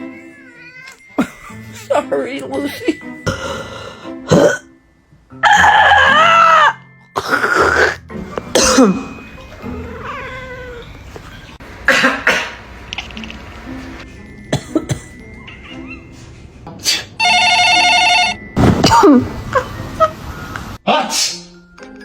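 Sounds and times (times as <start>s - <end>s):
cat meowing: 0.0s - 1.1s, 9.6s - 11.6s
person coughing: 3.2s - 4.7s, 7.2s - 9.1s, 11.8s - 12.6s, 14.5s - 15.2s.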